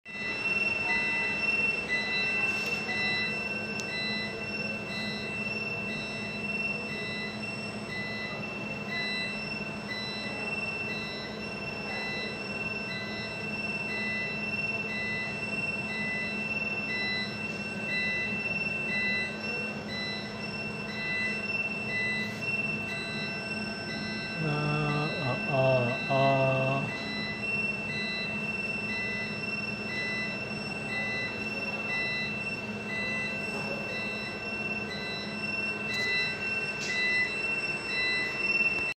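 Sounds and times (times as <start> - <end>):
fire alarm beeping tone: 0.0 - 38.9
fire alarm steady high tone: 0.0 - 38.9
buzzing hum: 19.9 - 28.3.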